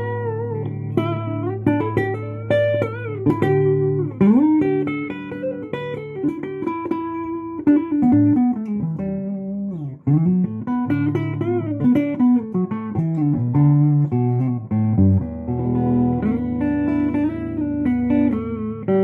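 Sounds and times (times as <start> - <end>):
electric guitar single-note lines: 0.0 - 19.0
low guitar notes ringing: 0.0 - 19.0.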